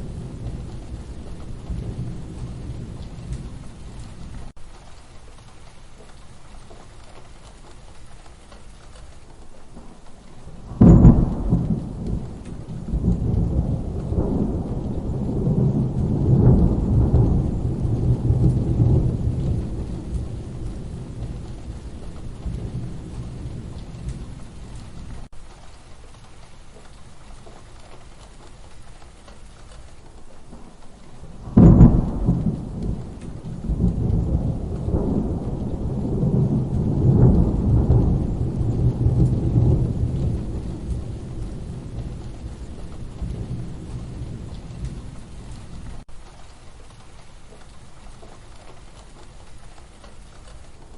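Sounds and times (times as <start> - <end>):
thunder crack and rumbling: 0.0 - 4.6, 9.6 - 25.4, 29.0 - 46.1
steady rain: 0.0 - 50.9.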